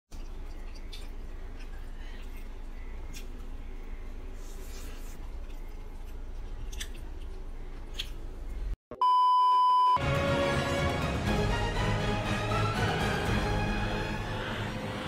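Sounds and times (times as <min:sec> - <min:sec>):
music: 0:10.0 - 0:15.0.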